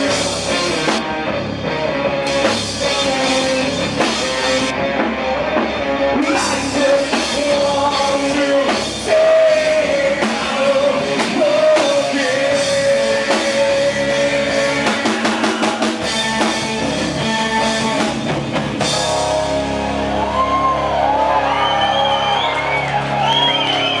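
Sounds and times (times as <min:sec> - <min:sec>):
rock band playing loudly: 0:00.0 - 0:24.0
person singing: 0:06.1 - 0:16.0.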